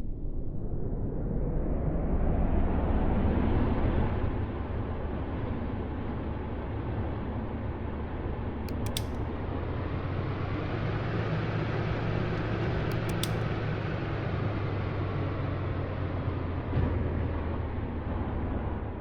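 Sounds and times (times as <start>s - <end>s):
short sharp clicks: 8.7s - 9.4s, 12.9s - 13.8s
ceiling fan humming: 8.7s - 16.6s.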